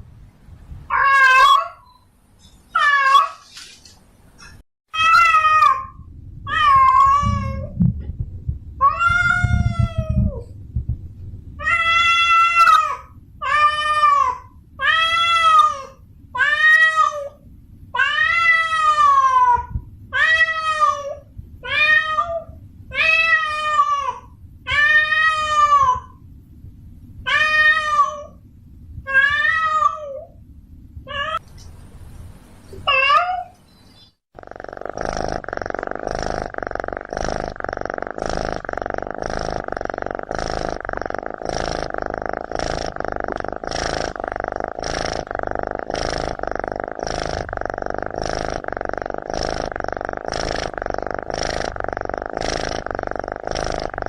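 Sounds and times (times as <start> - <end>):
cat yowling: 0.9 - 1.9, 2.7 - 3.4, 4.9 - 7.7, 8.8 - 10.4, 11.6 - 17.4.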